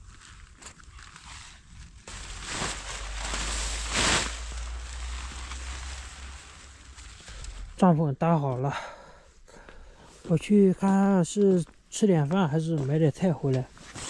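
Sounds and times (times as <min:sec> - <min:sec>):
tent fabric rustling: 0:00.0 - 0:07.9, 0:13.6 - 0:14.0
fabric swishes: 0:02.0 - 0:07.8
low rumble: 0:02.0 - 0:07.8.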